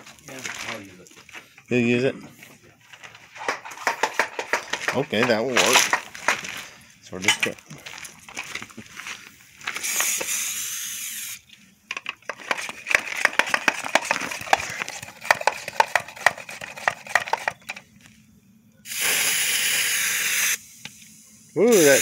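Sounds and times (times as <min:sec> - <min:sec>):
cooling metal crackling and ticking: 0:00.0 - 0:10.5
steam hissing: 0:09.8 - 0:11.4, 0:18.8 - 0:22.0.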